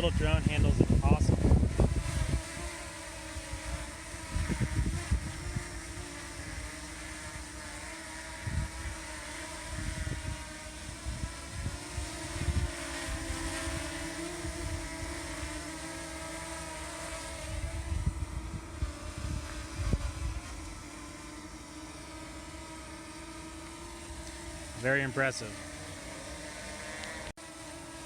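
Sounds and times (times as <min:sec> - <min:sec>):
wind buffeting microphone: 0:00.0 - 0:02.8, 0:03.4 - 0:06.0, 0:09.7 - 0:15.2, 0:17.4 - 0:20.8
drone propellers whining: 0:00.0 - 0:28.0.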